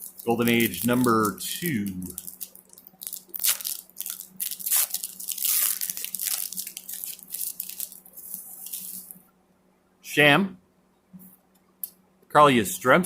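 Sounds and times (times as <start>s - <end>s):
wrapper crinkling and tearing: 0.0s - 9.2s.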